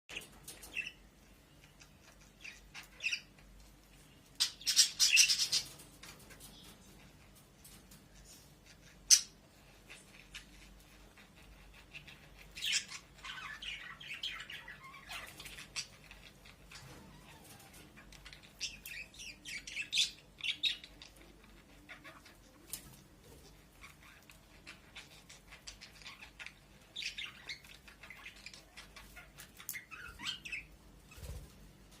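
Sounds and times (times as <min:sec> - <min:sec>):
budgerigars chirping and squawking: 0:00.1 - 0:03.6, 0:04.2 - 0:06.7, 0:08.4 - 0:32.0.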